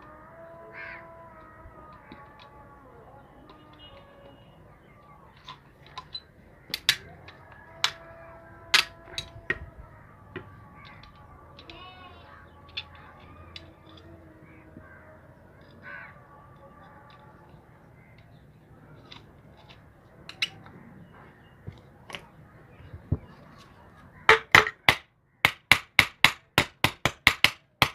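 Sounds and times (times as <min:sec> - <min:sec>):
sharp hammer strikes: 0:24.3 - 0:27.9.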